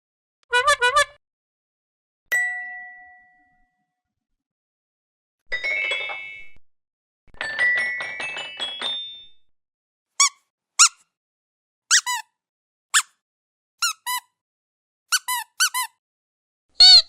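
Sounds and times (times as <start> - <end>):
rubber squeeze toy squeaks: 0.5 - 1.2, 10.2 - 11.1, 11.9 - 12.3, 12.9 - 13.2, 13.8 - 14.4, 15.1 - 16.0, 16.8 - 17.0
ringing bell-like tones: 5.5 - 6.6
tinkling chime notes: 5.5 - 6.6, 7.4 - 9.4.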